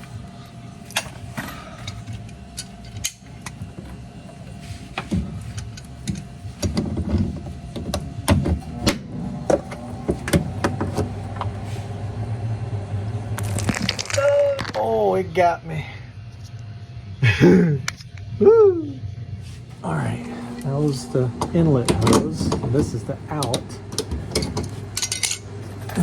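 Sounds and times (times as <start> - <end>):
low steady hum: 0.0 - 26.0
tools clicking and rattling: 5.0 - 8.1, 21.9 - 26.0.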